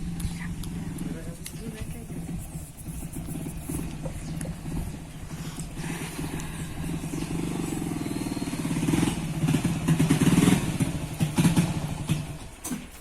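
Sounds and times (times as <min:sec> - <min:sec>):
motorcycle engine running: 0:00.0 - 0:12.6.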